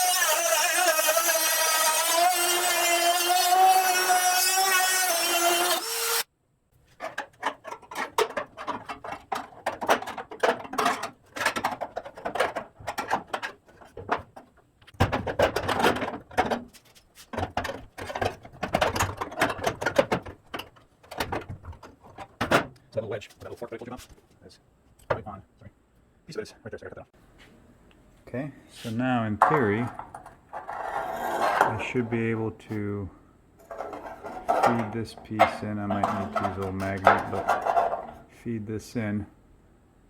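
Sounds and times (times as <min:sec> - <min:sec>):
power cutting tool whining: 0:00.0 - 0:06.3
metal being handled: 0:06.8 - 0:22.7, 0:33.6 - 0:38.2.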